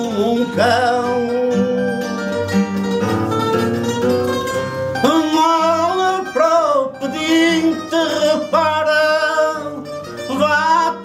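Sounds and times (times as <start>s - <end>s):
person singing with vibrato: 0.0s - 2.3s, 5.0s - 11.0s
plucked guitars: 0.0s - 11.0s.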